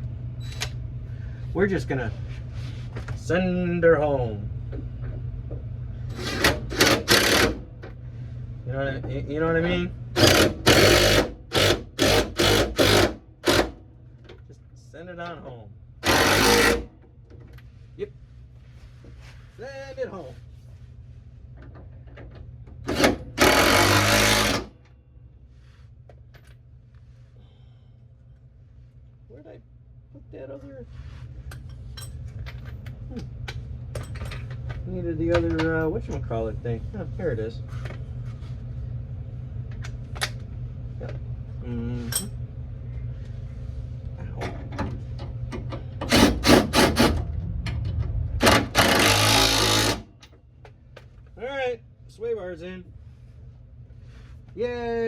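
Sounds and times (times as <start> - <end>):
steady low hum: 0.0 - 55.0
power tool driving bolt: 6.2 - 7.6, 10.2 - 13.8, 16.0 - 16.9, 22.9 - 24.7, 46.0 - 47.2, 48.4 - 50.2.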